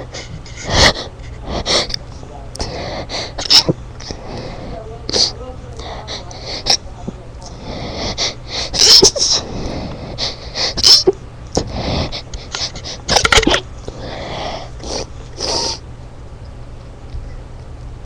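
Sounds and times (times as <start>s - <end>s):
person stifling sneezes: 8.6s - 9.4s, 10.8s - 11.2s.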